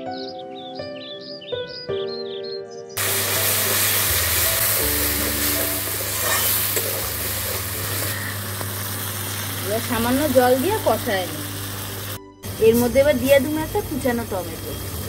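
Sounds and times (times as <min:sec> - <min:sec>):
spice paste sizzling in oil: 0:03.0 - 0:15.0.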